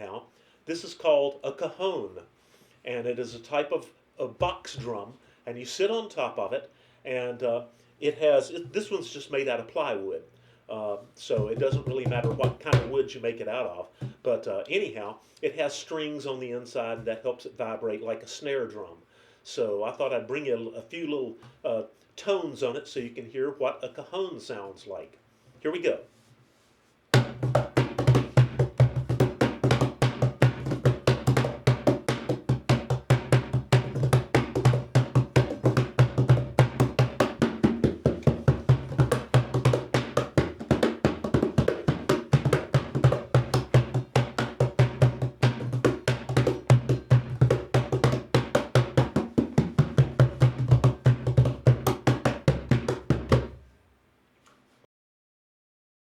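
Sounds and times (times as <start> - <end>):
box drum played by hand: 11.3 - 13.1, 27.1 - 53.6.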